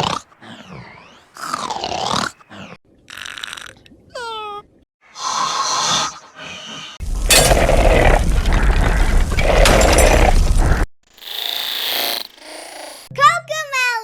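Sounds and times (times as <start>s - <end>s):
person snoring: 5.2s - 7.0s
heavy breaths: 5.2s - 7.4s.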